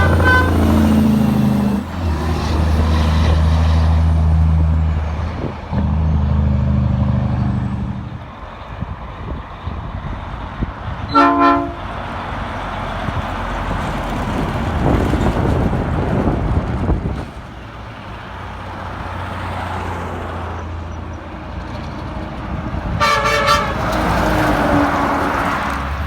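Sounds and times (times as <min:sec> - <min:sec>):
truck train horn blasts: 0:00.0 - 0:01.9, 0:11.1 - 0:12.1, 0:22.9 - 0:25.6
truck passing: 0:00.0 - 0:26.0.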